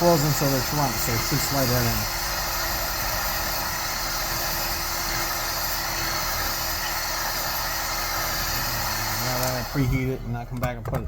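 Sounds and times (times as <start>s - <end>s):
hot air gun running: 0.0s - 10.8s.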